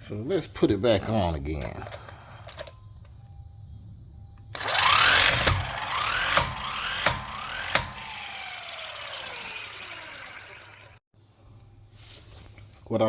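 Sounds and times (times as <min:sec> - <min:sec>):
electric impact wrench whining: 0:04.5 - 0:11.0.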